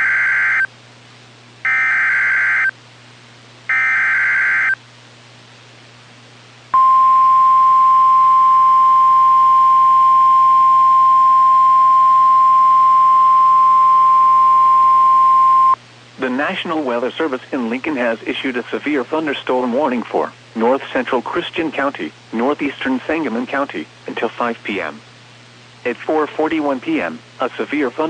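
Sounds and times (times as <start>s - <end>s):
steady alarm tone: 1.7s - 2.7s, 3.7s - 4.8s, 6.8s - 15.8s.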